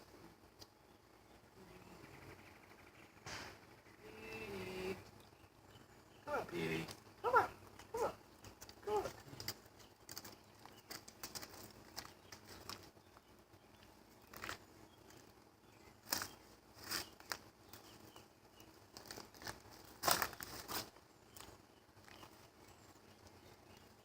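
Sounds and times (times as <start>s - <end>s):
rustling and crunching crackles: 4.9s - 24.0s.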